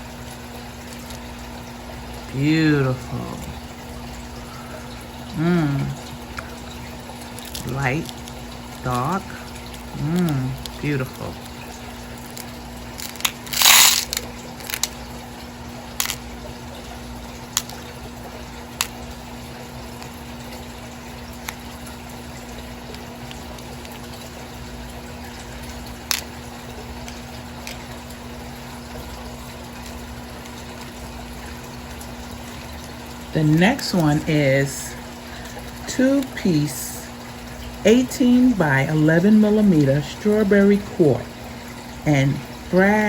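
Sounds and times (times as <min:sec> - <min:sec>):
steady low hum: 0:00.0 - 0:43.0
packaging crinkle: 0:12.2 - 0:15.1.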